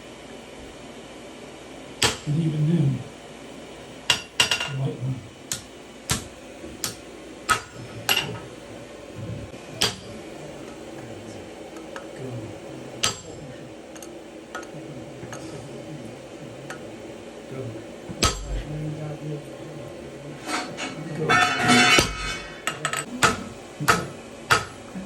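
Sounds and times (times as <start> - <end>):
hammers ringing on steel anvil: 13.0 - 13.4, 18.2 - 18.6, 21.3 - 22.4.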